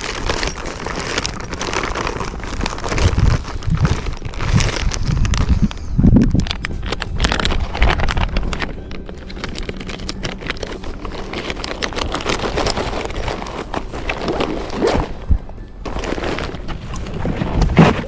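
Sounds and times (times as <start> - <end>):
wind buffeting microphone: 1.6 - 15.8.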